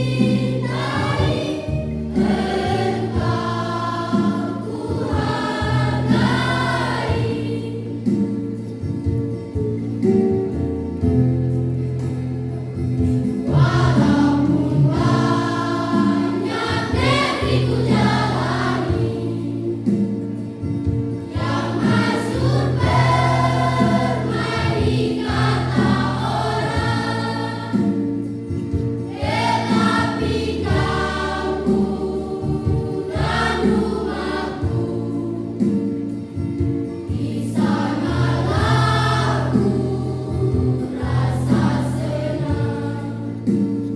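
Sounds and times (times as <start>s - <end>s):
choir singing: 0.0s - 8.2s, 13.4s - 19.9s, 21.3s - 28.3s, 29.1s - 35.9s, 37.1s - 43.6s.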